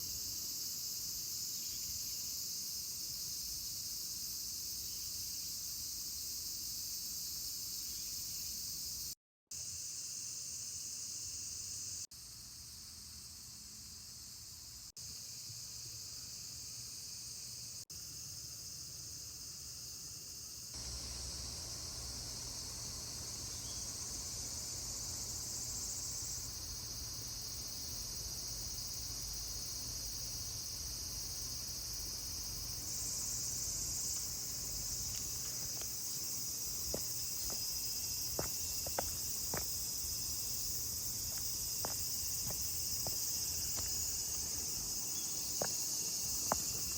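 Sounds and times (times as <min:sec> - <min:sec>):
insects chirring: 0:00.0 - 0:46.9.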